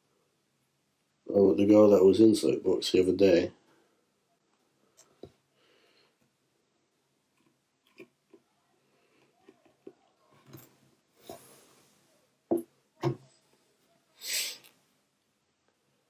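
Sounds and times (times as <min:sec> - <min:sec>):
short hiss: 0:14.2 - 0:14.8.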